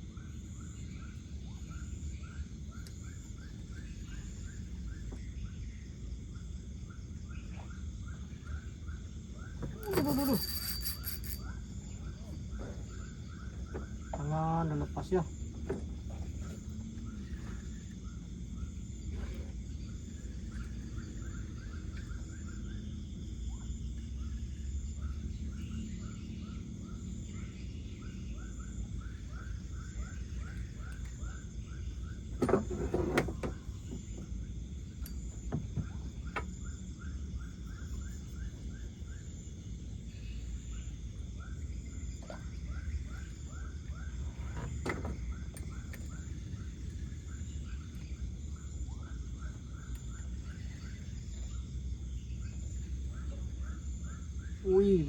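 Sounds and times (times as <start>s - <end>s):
insect chirps: 0.0s - 55.0s
insect high trill: 0.2s - 15.6s, 17.0s - 55.0s
low background rumble: 33.3s - 55.0s.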